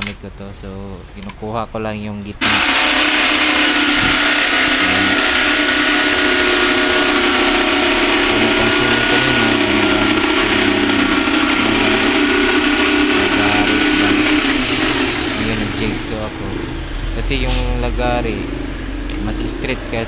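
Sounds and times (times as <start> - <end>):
electric jigsaw cutting plywood: 2.4 - 16.2.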